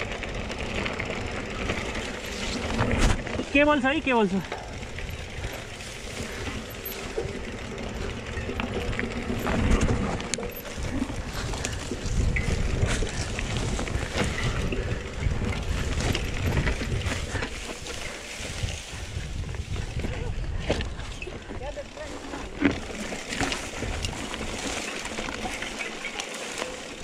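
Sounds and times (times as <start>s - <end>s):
bike frame rattling and knocking: 0.0s - 27.0s
wind buffeting microphone: 4.6s - 25.4s.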